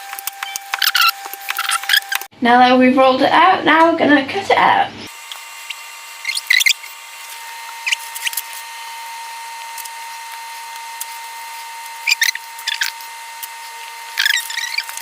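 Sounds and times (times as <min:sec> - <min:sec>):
pastry cutters squeaking on dough: 0:00.1 - 0:02.3, 0:05.6 - 0:08.7, 0:09.6 - 0:15.0.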